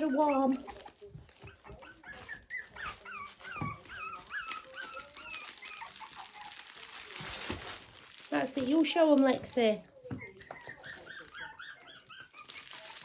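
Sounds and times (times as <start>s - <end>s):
puppy whimpering: 0.0s - 7.5s, 8.6s - 13.0s.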